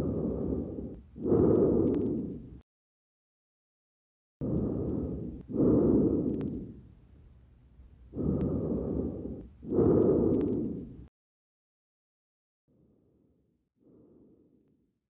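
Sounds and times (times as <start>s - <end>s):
lung breath sounds through stethoscope: 0.0s - 2.6s, 4.4s - 7.0s, 8.1s - 11.1s, 13.8s - 14.9s
faint sharp clicks: 0.9s - 2.3s, 6.2s - 6.7s, 9.4s - 10.8s.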